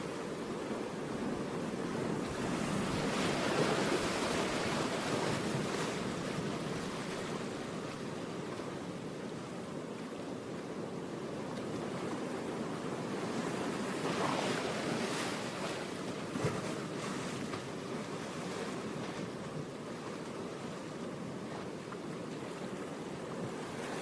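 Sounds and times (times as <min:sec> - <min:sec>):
ocean waves: 0:00.0 - 0:24.0.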